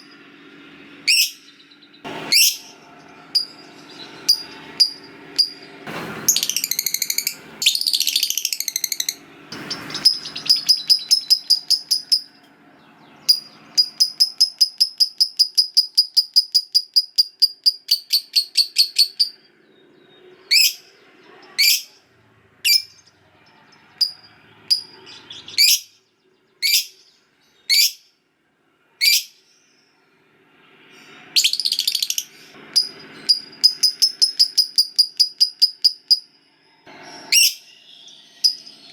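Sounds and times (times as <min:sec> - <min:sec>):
bird sharp chirps: 0:01.1 - 0:22.0, 0:31.0 - 0:38.9
lovebird harsh screechy calls: 0:02.2 - 0:02.8, 0:06.3 - 0:12.3
lovebird rapid chattering trill: 0:02.3 - 0:05.6, 0:06.3 - 0:12.4, 0:13.2 - 0:19.4, 0:31.4 - 0:36.3.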